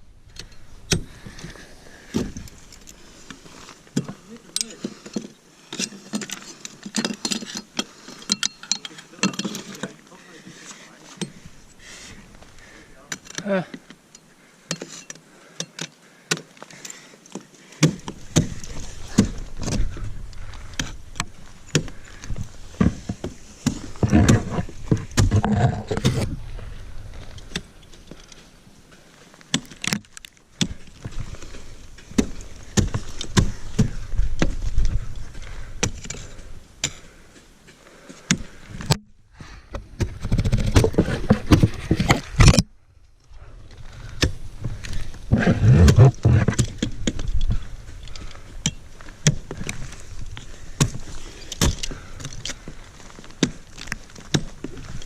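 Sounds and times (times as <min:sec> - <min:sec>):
metal climbing gear clinking: 0:00.3 - 0:11.9, 0:13.0 - 0:26.3, 0:44.7 - 0:55.0.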